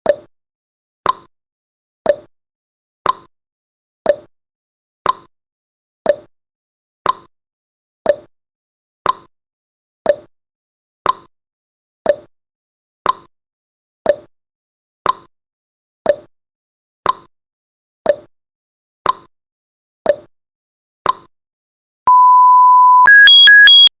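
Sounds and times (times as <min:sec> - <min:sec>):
electronic alarm: 0:22.1 - 0:23.9
timer beeps: 0:22.1 - 0:23.9.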